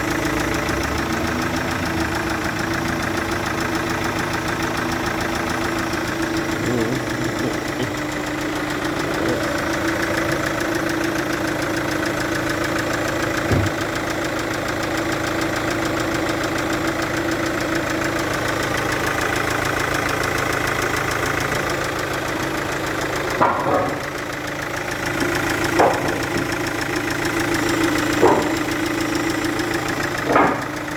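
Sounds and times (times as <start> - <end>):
diesel engine idling with knock: 0.0 - 30.9.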